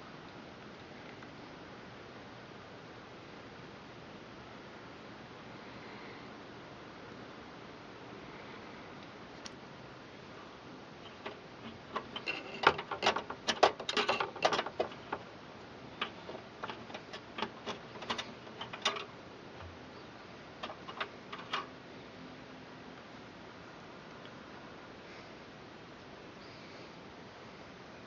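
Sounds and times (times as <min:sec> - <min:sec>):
computer case hardware clicks: 0:11.0 - 0:15.3, 0:16.0 - 0:19.8, 0:20.6 - 0:21.7.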